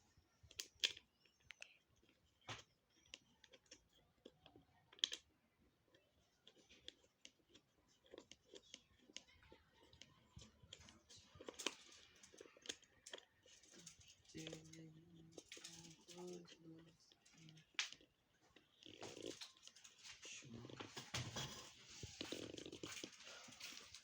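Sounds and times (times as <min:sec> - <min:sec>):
plastic parts clicking and tapping: 0:06.5 - 0:20.2.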